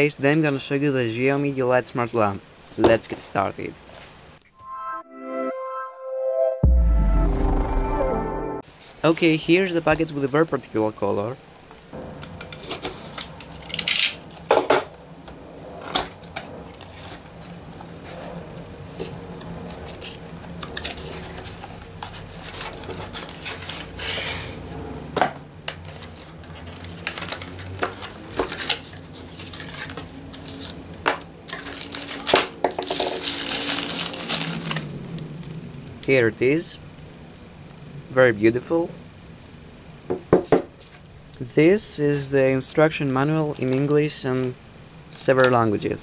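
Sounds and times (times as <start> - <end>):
cardboard packaging being handled: 20.8 - 24.1, 25.8 - 30.8, 31.5 - 34.9
cardboard tearing: 31.5 - 34.9.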